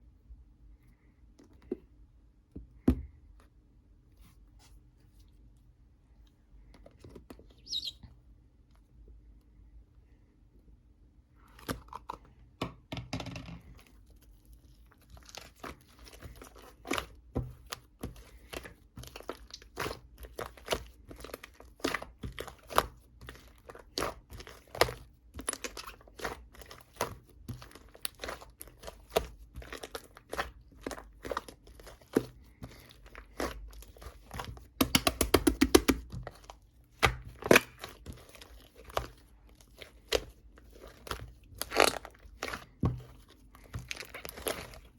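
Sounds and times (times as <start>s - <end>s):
crinkling and crunching clicks: 23.3s - 44.9s.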